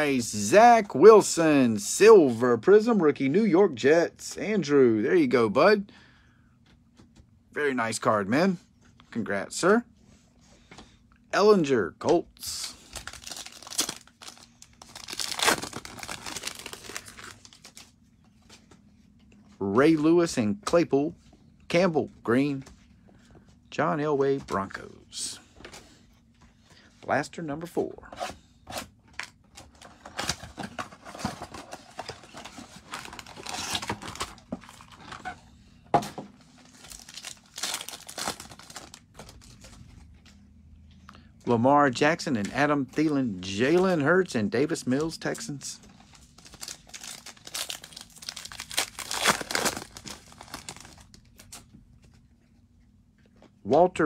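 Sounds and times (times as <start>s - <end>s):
plastic wrapper tearing: 12.5s - 17.9s, 30.1s - 35.3s, 36.6s - 39.7s, 46.2s - 51.6s
wrapper crinkling: 12.5s - 17.9s, 30.1s - 35.2s, 36.5s - 40.0s, 46.0s - 51.6s.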